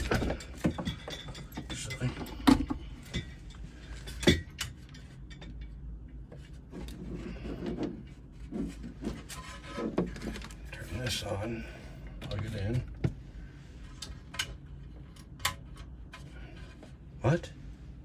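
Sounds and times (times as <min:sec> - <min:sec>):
tools clinking and knocking: 0:00.0 - 0:05.8
low steady hum: 0:00.0 - 0:18.0.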